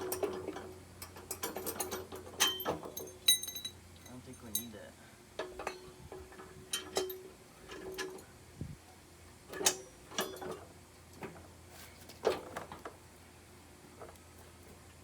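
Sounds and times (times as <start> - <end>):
small metal parts clinking: 0.0 - 4.8.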